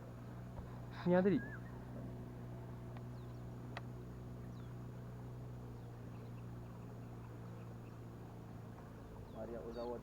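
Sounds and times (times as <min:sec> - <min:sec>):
boat motor humming: 0:00.0 - 0:10.0
faint short birdcalls: 0:00.8 - 0:02.0.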